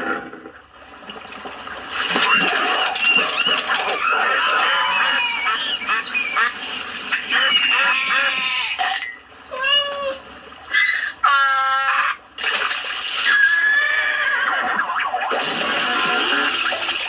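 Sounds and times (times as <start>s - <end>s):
squeaky animal-like squeals: 2.3s - 10.1s, 10.7s - 12.2s, 13.2s - 15.2s.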